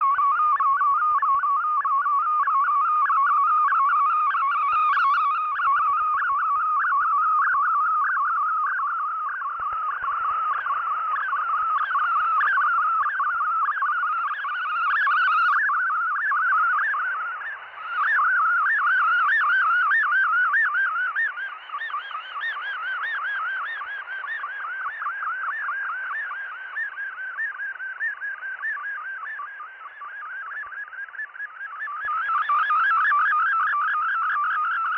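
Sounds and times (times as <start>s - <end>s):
warbling digital data signal tones: 0.0s - 34.9s.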